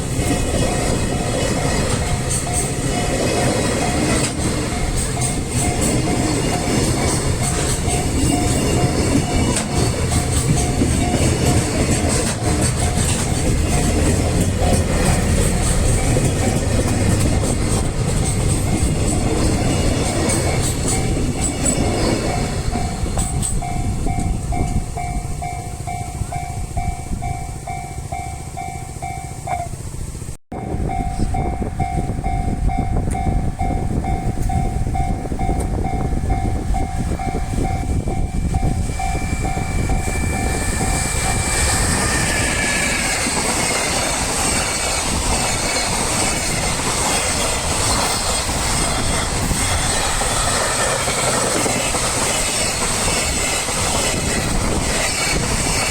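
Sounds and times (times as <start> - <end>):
wheel clatter on rails: 0.0 - 25.2, 36.4 - 55.9
train rumbling: 0.0 - 55.9.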